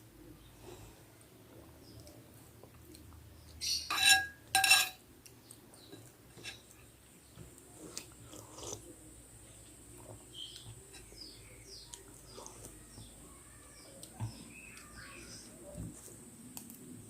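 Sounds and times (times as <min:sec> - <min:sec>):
soft chewing: 0:00.2 - 0:03.6, 0:05.1 - 0:17.0
metal spoon clinking against bowl: 0:03.9 - 0:05.0.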